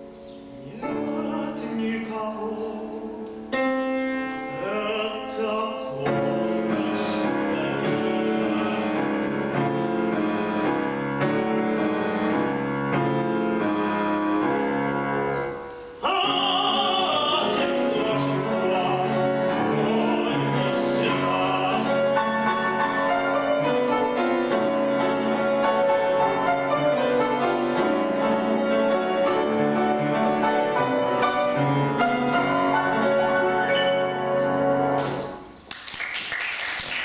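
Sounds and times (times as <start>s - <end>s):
piano playing: 0.0s - 35.7s
man singing: 0.6s - 9.8s, 16.0s - 22.8s
applause: 35.0s - 37.0s.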